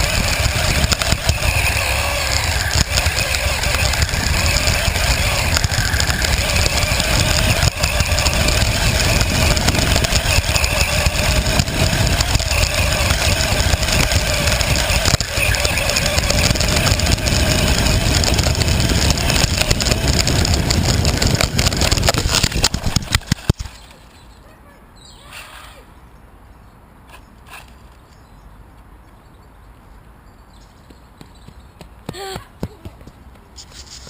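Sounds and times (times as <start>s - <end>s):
remote-control car motor whine: 0.0s - 23.9s
wind and ground rushing noise: 0.0s - 24.0s.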